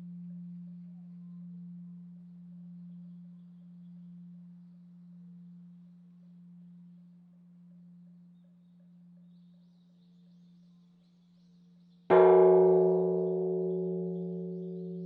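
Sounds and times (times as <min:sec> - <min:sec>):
temple bell humming: 0:12.1 - 0:15.0.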